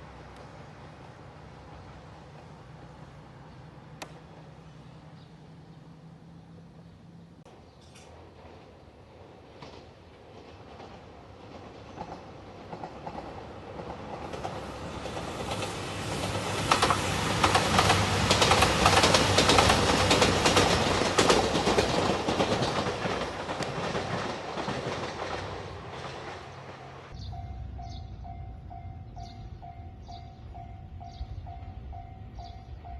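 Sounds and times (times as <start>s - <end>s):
diesel train passing: 0.0s - 32.9s
wheels clacking over rail joints: 9.5s - 27.2s.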